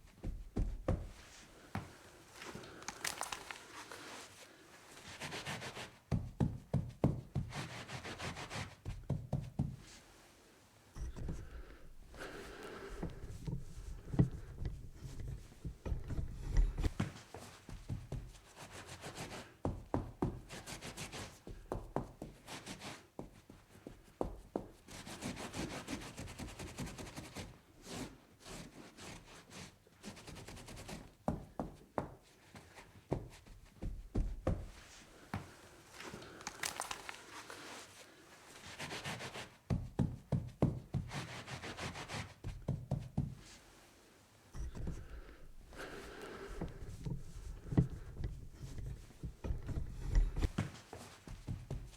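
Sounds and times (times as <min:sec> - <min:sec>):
scrubbing a tabletop: 0:41.0 - 0:42.5.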